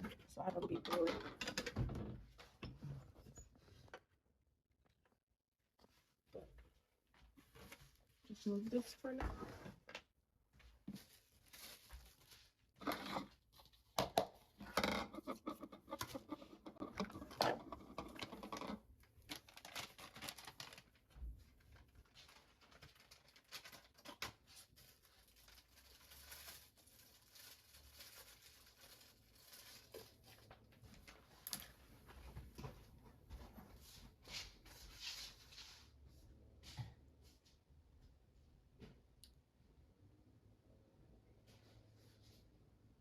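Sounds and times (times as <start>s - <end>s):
small objects rustling: 10.9s - 13.9s, 14.6s - 32.1s.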